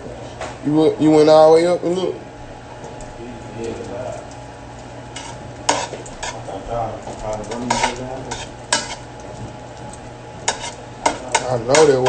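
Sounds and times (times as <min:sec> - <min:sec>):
food sizzling: 0:01.0 - 0:12.0
utensil clanking against pan: 0:03.6 - 0:12.0
metal utensil scraping a frying pan: 0:05.1 - 0:06.5, 0:07.4 - 0:09.2, 0:10.4 - 0:12.0.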